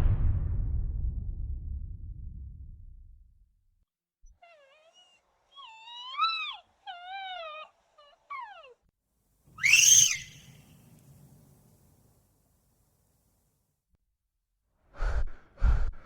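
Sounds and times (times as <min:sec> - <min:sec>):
low rumble: 0:00.0 - 0:03.6
harsh creature shriek: 0:09.6 - 0:10.5.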